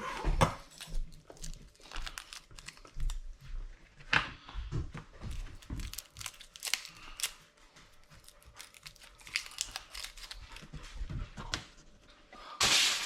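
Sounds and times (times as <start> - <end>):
packaging crinkling: 0.7 - 3.3, 5.3 - 10.7.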